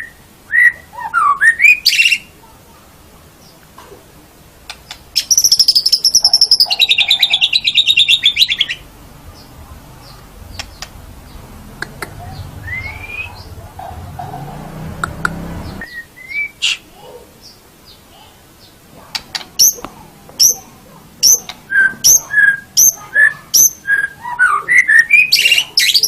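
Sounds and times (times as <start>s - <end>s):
bird clicks and whistle: 4.7s - 5.9s, 10.5s - 11.0s, 19.1s - 20.5s
bird singing fast trill: 5.1s - 11.5s, 12.1s - 13.6s, 20.4s - 26.0s.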